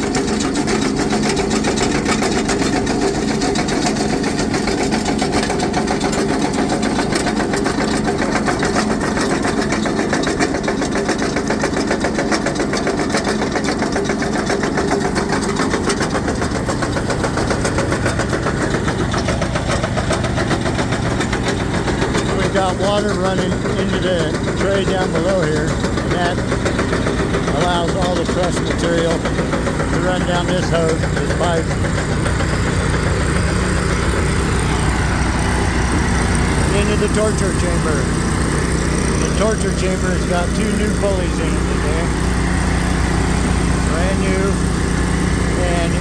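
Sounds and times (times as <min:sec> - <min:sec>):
jaw crusher rattling rock: 0:00.0 - 0:46.0
machinery hum: 0:15.2 - 0:46.0.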